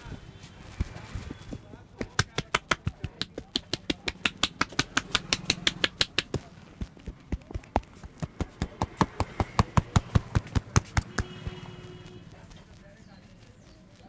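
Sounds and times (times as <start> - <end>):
hand slaps of head massage: 2.0 - 11.6.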